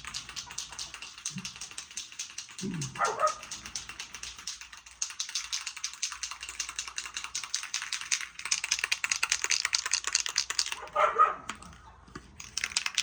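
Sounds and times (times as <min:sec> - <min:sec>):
rapid clicking rattle: 0:00.0 - 0:13.0
dog yelping: 0:02.9 - 0:03.5, 0:10.8 - 0:11.5.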